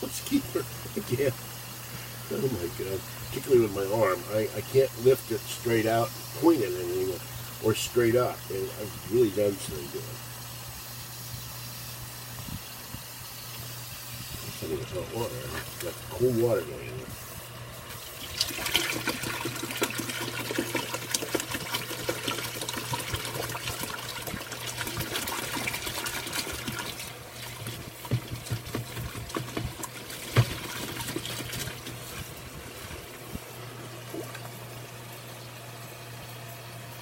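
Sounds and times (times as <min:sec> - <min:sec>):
tap water running into sink: 0:17.9 - 0:35.6.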